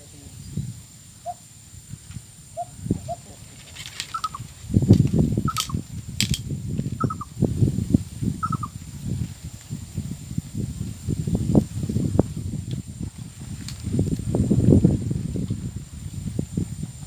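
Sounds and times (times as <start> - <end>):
rustling and handling noise: 3.4 - 6.4
sharp clicks: 3.8 - 6.5
bird chirping call: 4.0 - 4.4, 5.4 - 5.8, 7.0 - 7.3, 8.4 - 8.7.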